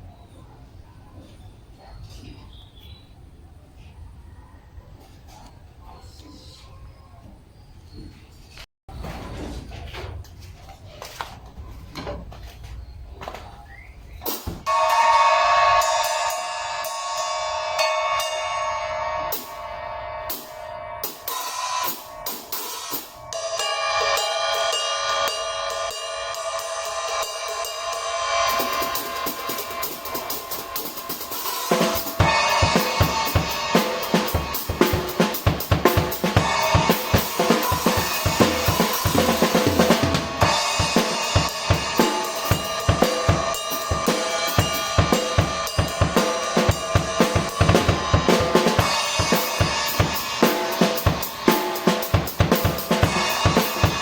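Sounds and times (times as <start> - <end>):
cymbal ringing: 14.6 - 54.0
drum kit playing: 19.3 - 54.0.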